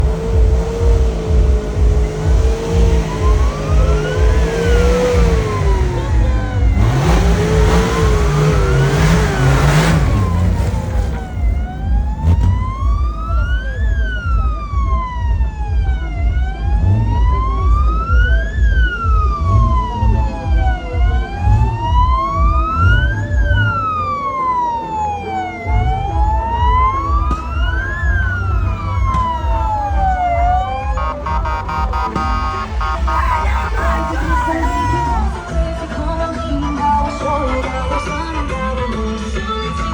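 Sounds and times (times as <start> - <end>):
heavy uneven low thudding: 0.0 - 15.2, 25.6 - 36.3
wail siren: 0.0 - 38.2
loud noisy rush: 30.8 - 35.7.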